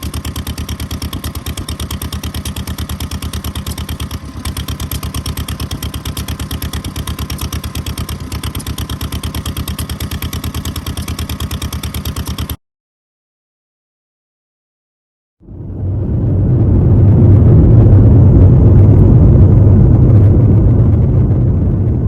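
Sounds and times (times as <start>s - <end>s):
kerosene engine running: 0.0s - 12.6s.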